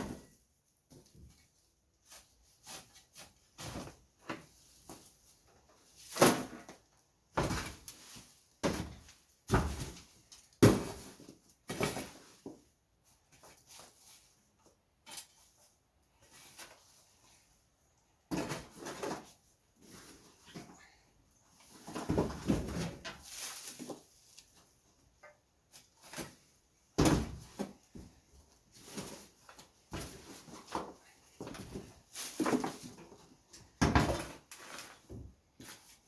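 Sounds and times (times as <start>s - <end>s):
shovel scraping floor: 2.1s - 4.1s, 18.3s - 20.6s, 21.7s - 24.4s, 34.0s - 36.0s.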